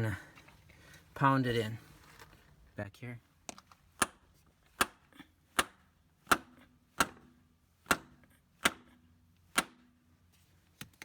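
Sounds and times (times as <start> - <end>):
hammer striking metal axle: 5.6 - 9.9.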